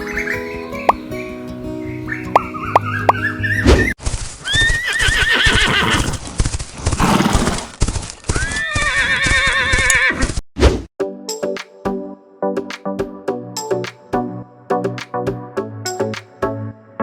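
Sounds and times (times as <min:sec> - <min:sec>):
music: 0:00.0 - 0:03.9, 0:11.0 - 0:17.0
horse whinnying: 0:04.4 - 0:10.3
clip-clopping hoofbeats: 0:04.6 - 0:10.0.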